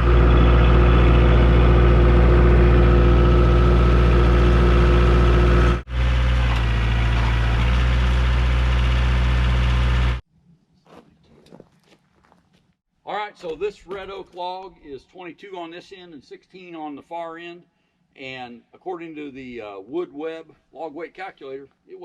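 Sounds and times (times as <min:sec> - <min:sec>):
heavy machine engine running: 0:00.0 - 0:10.2.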